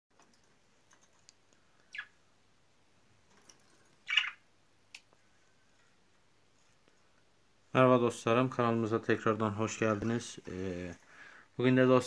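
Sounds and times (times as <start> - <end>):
budgerigar chirps: 4.0 - 4.4.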